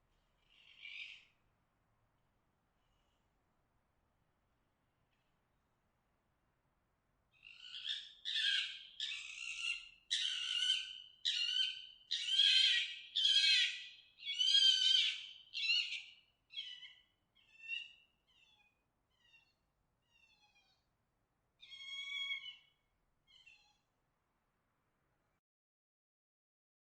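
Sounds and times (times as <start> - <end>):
fox calling: 7.5 - 20.8, 21.6 - 23.8.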